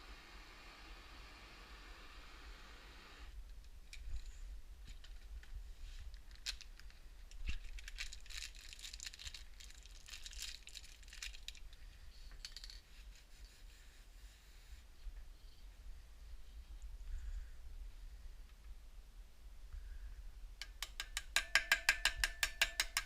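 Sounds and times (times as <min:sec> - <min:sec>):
faint hiss: 0:00.0 - 0:07.8, 0:10.9 - 0:20.6
clicks and rattles of small parts: 0:03.5 - 0:12.9.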